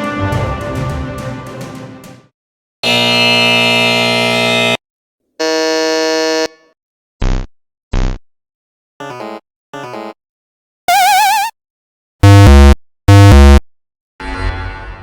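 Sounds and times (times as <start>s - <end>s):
wrong-answer buzzer: 2.8s - 4.8s, 5.4s - 8.2s, 12.2s - 13.6s.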